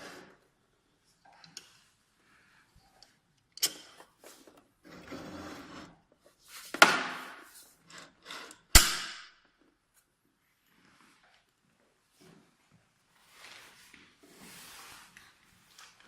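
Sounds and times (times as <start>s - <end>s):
equipment rubbing and scraping: 4.3s - 6.0s.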